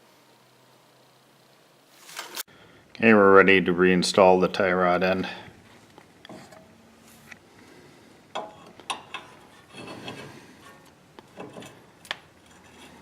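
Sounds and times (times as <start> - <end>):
metal scrape: 8.4 - 13.0.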